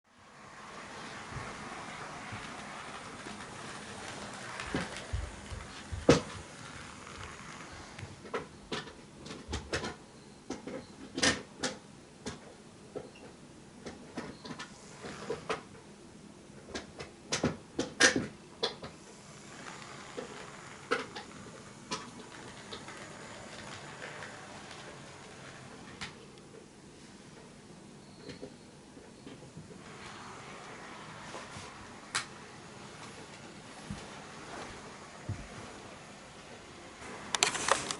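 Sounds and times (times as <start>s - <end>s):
faint train running noise: 0.2s - 8.9s, 18.9s - 37.9s
model train wheels clicking: 0.4s - 8.4s, 18.6s - 26.2s, 29.8s - 37.9s.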